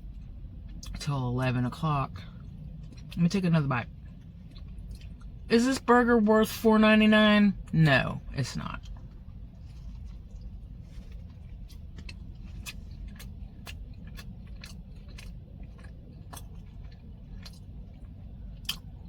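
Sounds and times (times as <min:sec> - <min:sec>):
low rumble inside car: 0:00.0 - 0:19.0
chewing with wet mouth clicks: 0:02.3 - 0:05.5, 0:08.8 - 0:19.0.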